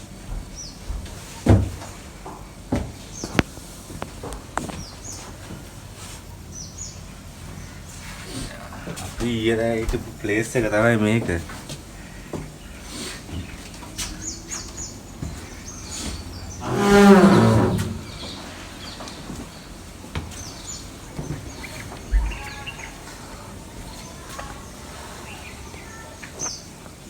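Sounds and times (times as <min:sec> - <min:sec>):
birds chirping and singing: 0:20.3 - 0:23.1.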